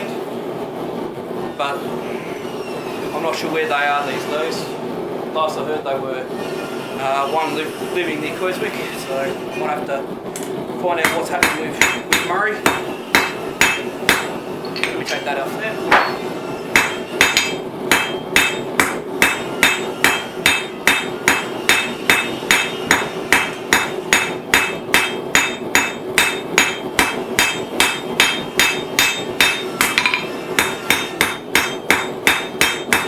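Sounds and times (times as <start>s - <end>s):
hammer striking steel on anvil: 11.0s - 33.0s.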